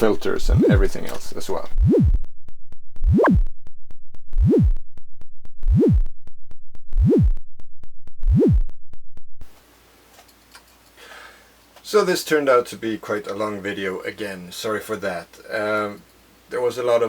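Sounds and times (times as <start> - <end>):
swooping synthesizer tone: 0.4 - 1.1, 1.7 - 9.6
fast even ticking: 0.4 - 7.4.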